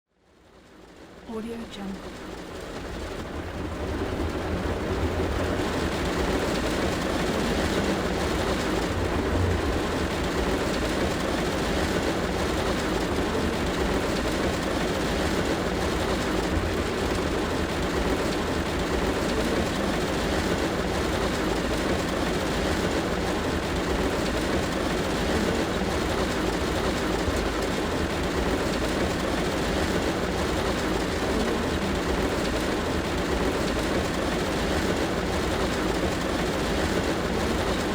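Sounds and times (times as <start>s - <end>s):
heavy rain on car roof: 0.4s - 37.9s
deep rumble: 2.0s - 11.5s.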